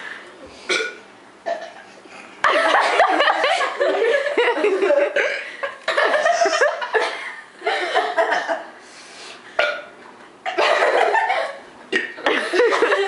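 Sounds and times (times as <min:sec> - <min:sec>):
girls laughing: 0:02.4 - 0:08.6, 0:10.5 - 0:13.0.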